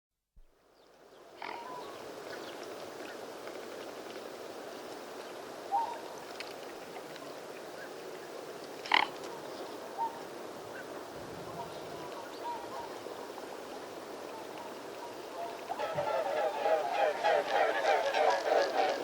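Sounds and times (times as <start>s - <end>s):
swans calling: 14.4s - 19.0s.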